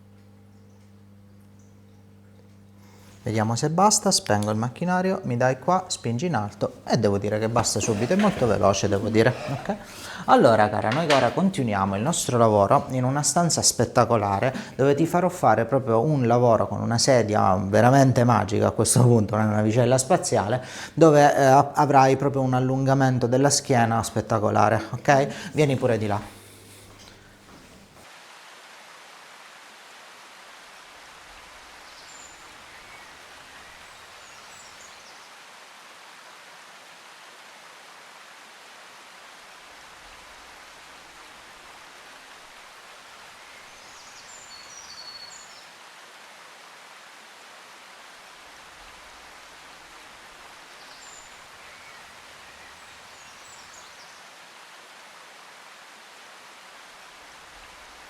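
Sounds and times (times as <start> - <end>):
hiss of running water: 2.8 - 16.2, 20.0 - 58.0
faint high bird chirps: 43.5 - 45.7.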